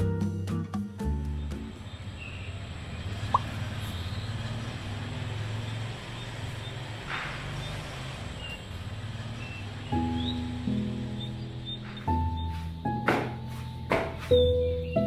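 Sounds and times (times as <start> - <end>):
low rumble of traffic: 0.7 - 15.0
music with held chord: 9.8 - 15.0.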